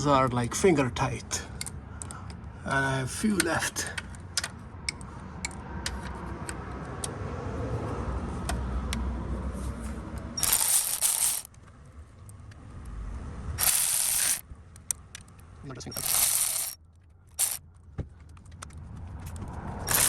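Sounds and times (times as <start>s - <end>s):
harsh bursts: 10.4s - 11.5s, 13.6s - 14.4s, 16.0s - 16.8s, 17.4s - 17.6s
ratchet and socket metal clicks: 10.4s - 11.6s, 13.6s - 17.6s.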